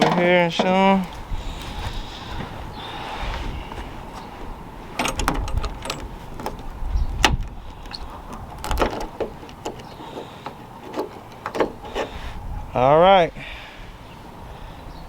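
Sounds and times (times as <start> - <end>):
clicks of lock hardware handled: 5.0 - 12.0.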